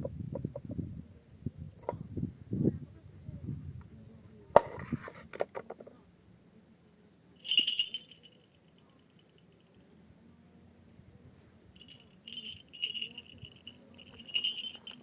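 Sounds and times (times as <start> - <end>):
high metallic jingle: 7.4 - 8.4, 11.8 - 15.0.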